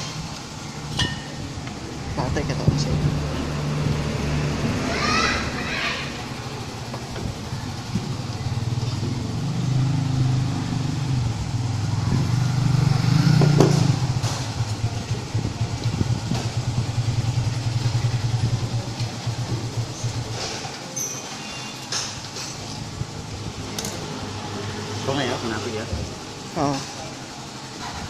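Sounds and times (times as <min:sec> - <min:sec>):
motorcycle engine running: 0:00.0 - 0:20.8.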